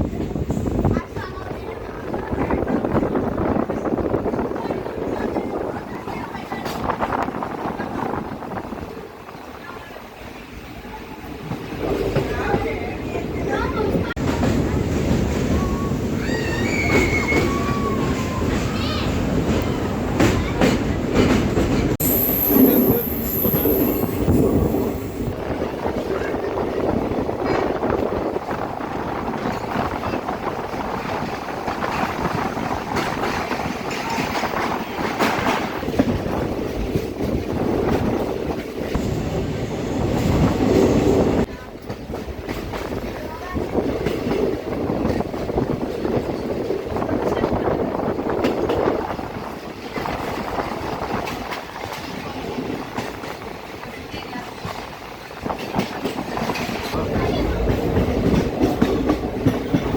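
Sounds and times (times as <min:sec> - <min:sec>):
train wheels rumbling on rails: 0:00.0 - 0:59.9
wind buffeting microphone: 0:00.0 - 0:59.9.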